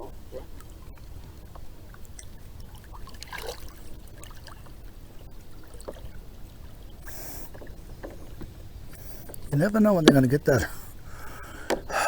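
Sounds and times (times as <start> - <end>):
water trickling around kayak: 0.0 - 12.0
short water splash: 2.7 - 4.7.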